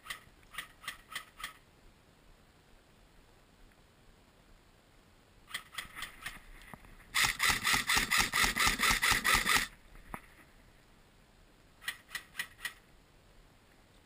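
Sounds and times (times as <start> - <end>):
airsoft guns firing: 7.1 - 9.7.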